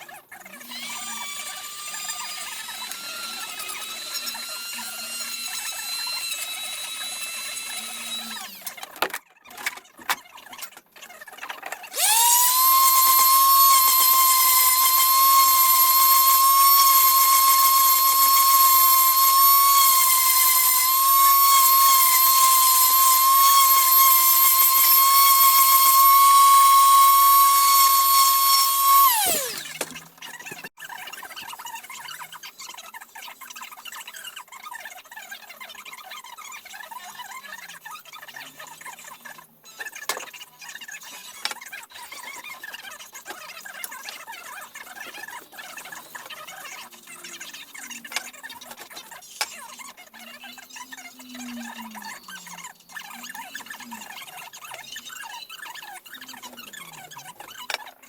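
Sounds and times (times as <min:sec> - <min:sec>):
electric tool motor whining: 0:00.6 - 0:09.1, 0:11.8 - 0:30.4.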